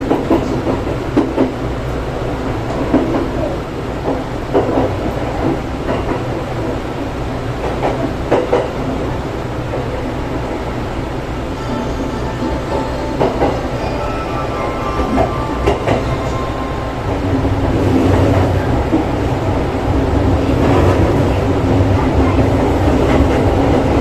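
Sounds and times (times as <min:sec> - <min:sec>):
train car rumble: 0:00.0 - 0:24.0.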